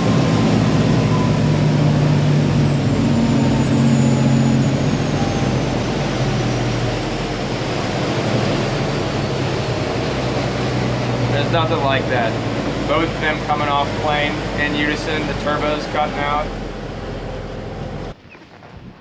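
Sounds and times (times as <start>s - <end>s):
boat engines droning: 0.0s - 18.2s.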